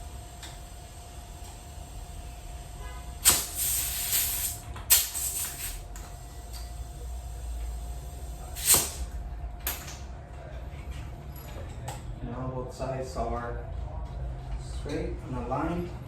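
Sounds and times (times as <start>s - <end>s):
air hissing into bicycle tire: 3.2s - 9.1s.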